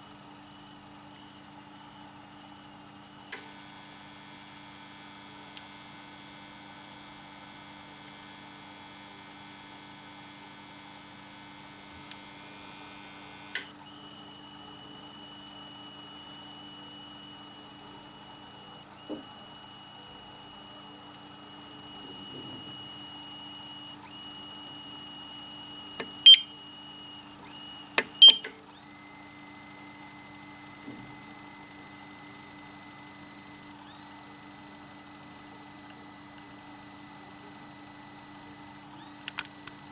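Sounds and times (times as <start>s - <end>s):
sharp clicks: 13.6s - 13.8s, 27.3s - 28.8s, 39.0s - 39.9s.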